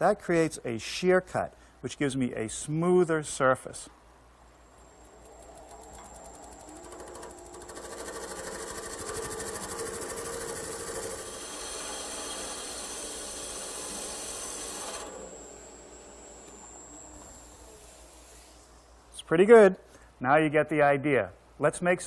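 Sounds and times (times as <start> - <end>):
chisel scraping wood on lathe: 7.0 - 15.2.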